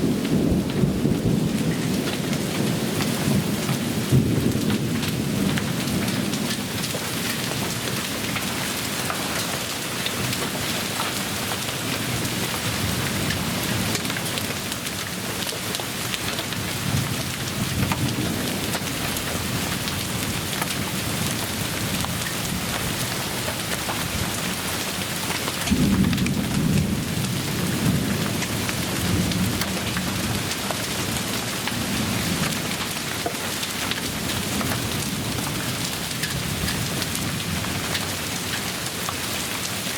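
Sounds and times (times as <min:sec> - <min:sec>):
thunder rumbling: 0:00.0 - 0:06.8, 0:25.7 - 0:32.8
heavy rain falling: 0:00.0 - 0:39.9.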